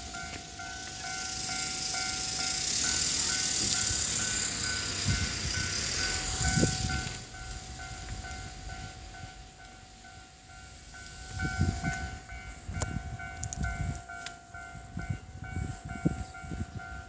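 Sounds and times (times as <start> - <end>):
train thumps: 0.0 - 9.0
level crossing warning bell ringing: 0.0 - 17.0
train wheels rushing on rails: 0.0 - 17.0.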